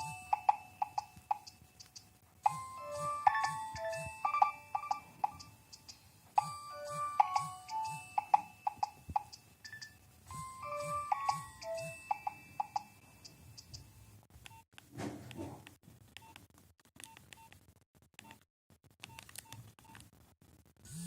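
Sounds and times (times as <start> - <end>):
synthesized ringtone melody: 0.0 - 1.7, 2.4 - 13.1
keypad beeps: 0.0 - 12.9.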